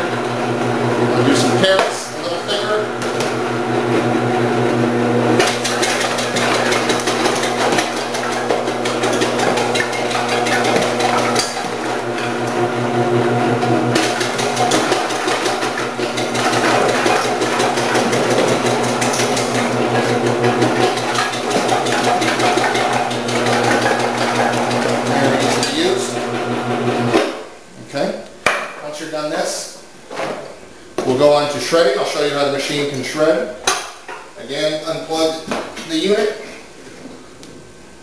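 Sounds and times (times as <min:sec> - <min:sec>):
slicer motor humming: 0:05.3 - 0:26.4.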